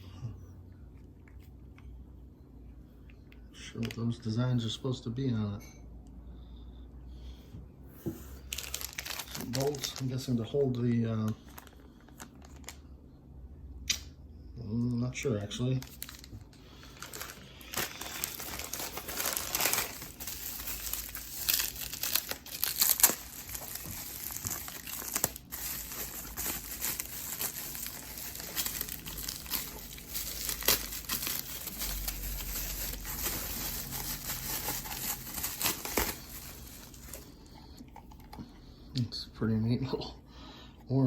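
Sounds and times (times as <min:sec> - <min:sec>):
plastic packaging crinkling: 0:08.4 - 0:12.8, 0:15.3 - 0:38.3
plastic tearing: 0:08.5 - 0:10.3, 0:11.4 - 0:12.8, 0:15.7 - 0:37.3.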